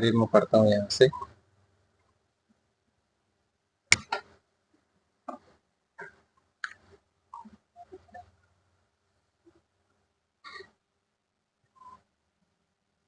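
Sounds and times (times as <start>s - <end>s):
sharp clicks and taps: 3.9s - 4.3s.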